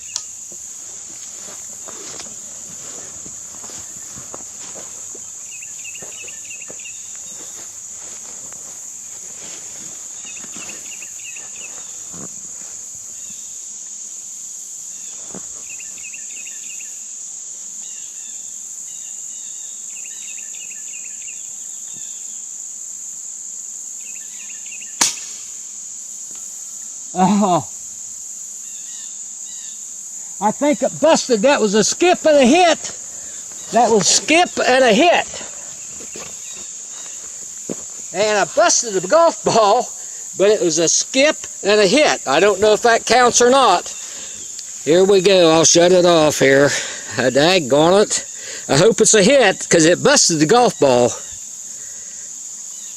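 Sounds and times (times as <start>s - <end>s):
high insect buzz: 0.0s - 52.9s
insect chirping trills: 0.0s - 52.9s
air rifle firing crack: 25.0s - 25.6s.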